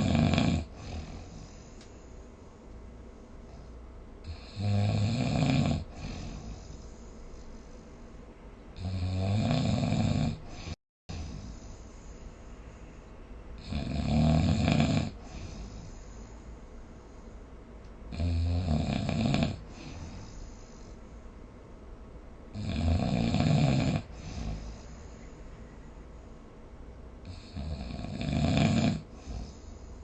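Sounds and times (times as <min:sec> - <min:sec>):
person snoring: 0:00.0 - 0:01.6, 0:04.2 - 0:06.9, 0:08.8 - 0:11.8, 0:13.6 - 0:16.2, 0:18.1 - 0:20.5, 0:22.5 - 0:25.0, 0:27.2 - 0:29.8
quiet breathing: 0:00.0 - 0:04.8, 0:05.6 - 0:08.9, 0:10.4 - 0:18.2, 0:19.1 - 0:21.9, 0:23.9 - 0:30.0.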